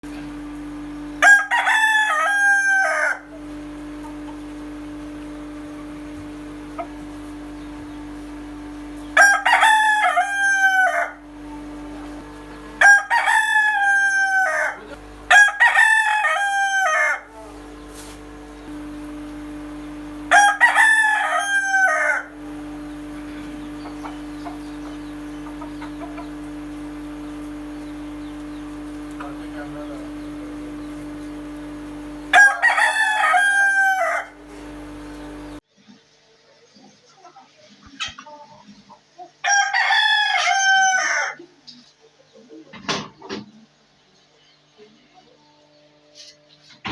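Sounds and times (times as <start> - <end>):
steady background hum: 0.0 - 46.9
rooster crowing: 1.2 - 3.5, 9.1 - 17.5, 20.0 - 27.1, 32.0 - 35.5, 39.4 - 41.5.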